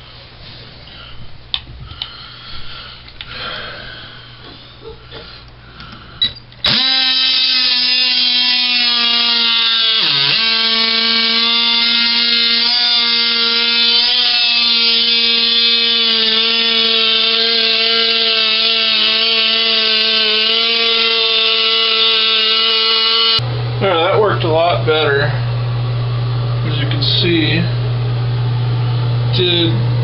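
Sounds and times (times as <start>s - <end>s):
oscillating multi-tool buzzing: 6.6s - 23.4s.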